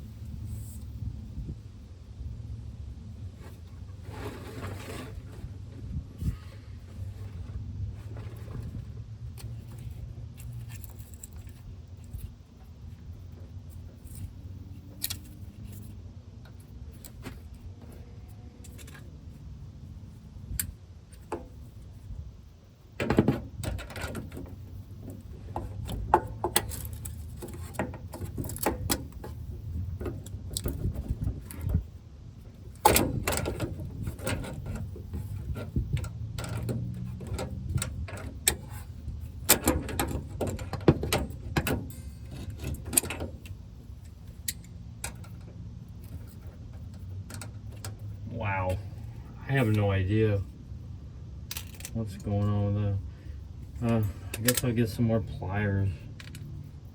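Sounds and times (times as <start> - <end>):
low steady rumble: 0.0 - 56.9
hand tools clicking and scraping metal: 23.0 - 31.8, 32.6 - 48.2.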